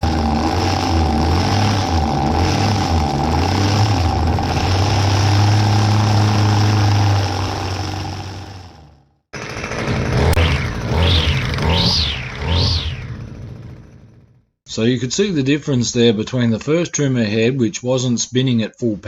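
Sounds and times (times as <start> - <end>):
string trimmer engine running: 0.0 - 8.7, 9.4 - 14.0.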